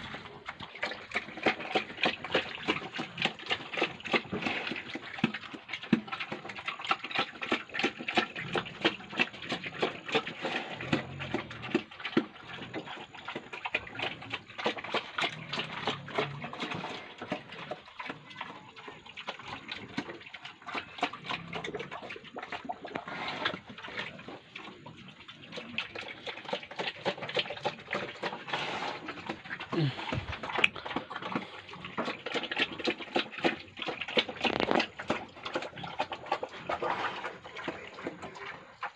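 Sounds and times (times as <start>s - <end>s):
pigs smacking and slurping feed: 0.0s - 38.9s
pig grunts: 8.2s - 13.1s, 13.8s - 18.7s, 27.3s - 33.3s.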